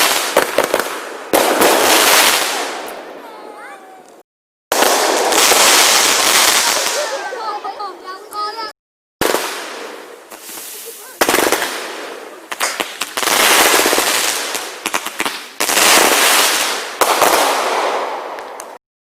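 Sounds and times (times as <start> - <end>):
fireworks bursts: 0.0 - 18.8
fireworks crackling: 0.0 - 18.8.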